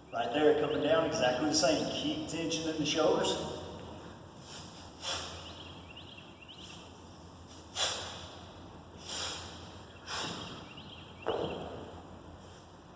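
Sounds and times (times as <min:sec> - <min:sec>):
man's sharp hissing exhalations: 0:04.4 - 0:05.4, 0:07.4 - 0:10.6.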